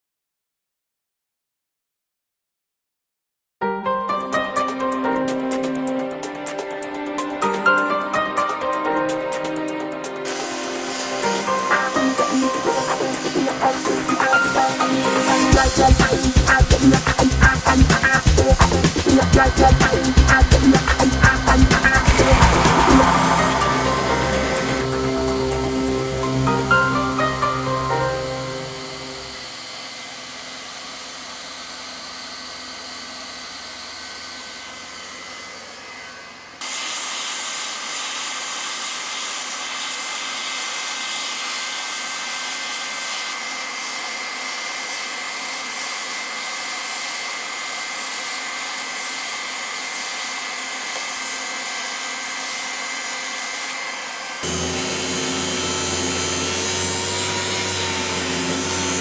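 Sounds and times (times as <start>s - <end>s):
hot-air tool blowing hiss: 10.2s - 26.6s, 36.6s - 59.0s
thin steady whine: 19.4s - 29.6s.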